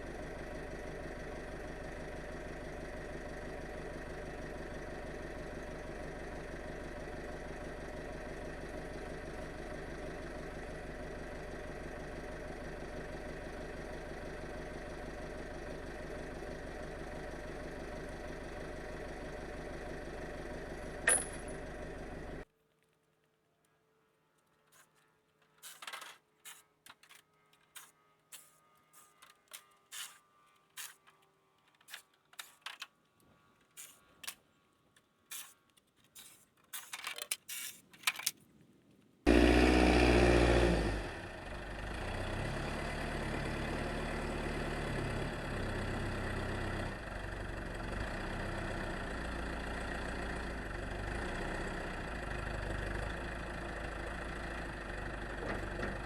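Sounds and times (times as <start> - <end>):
engine idling: 0.0 - 22.5, 39.3 - 56.0.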